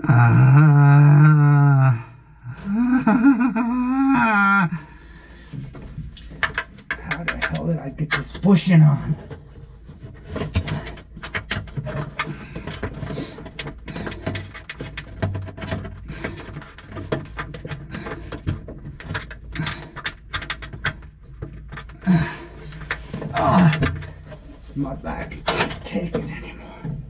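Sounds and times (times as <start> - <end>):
hand tools clicking and tapping: 6.1 - 8.4, 9.2 - 24.6.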